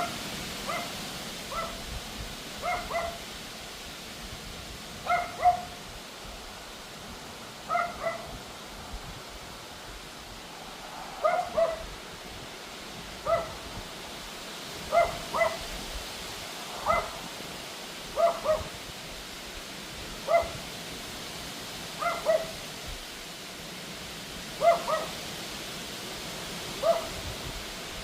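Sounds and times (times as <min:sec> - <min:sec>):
wind hiss: 0:00.0 - 0:28.0
small dog yapping: 0:00.7 - 0:00.9, 0:01.5 - 0:01.8, 0:02.6 - 0:03.2, 0:05.1 - 0:05.8, 0:07.7 - 0:08.3, 0:11.2 - 0:11.8, 0:13.2 - 0:13.5, 0:14.9 - 0:15.6, 0:16.8 - 0:17.2, 0:18.2 - 0:18.7, 0:20.3 - 0:20.6, 0:22.0 - 0:22.6, 0:24.6 - 0:25.1, 0:26.8 - 0:27.2.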